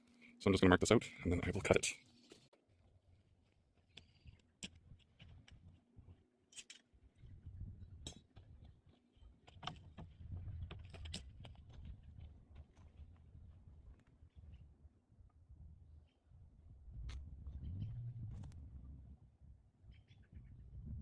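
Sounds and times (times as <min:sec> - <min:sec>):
plywood rustling and bumping: 0:08.0 - 0:13.3.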